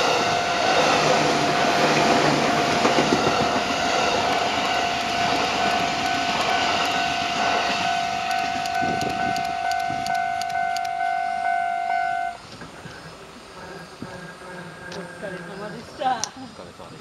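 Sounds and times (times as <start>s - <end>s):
passing train noise: 0.0s - 16.0s
level crossing bell ringing: 4.7s - 12.4s.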